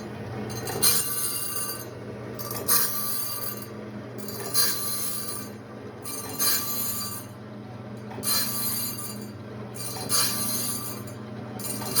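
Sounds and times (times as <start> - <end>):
motor hum: 0.0 - 12.0
grinding wheel ringing on steel: 0.5 - 1.9, 8.2 - 12.0.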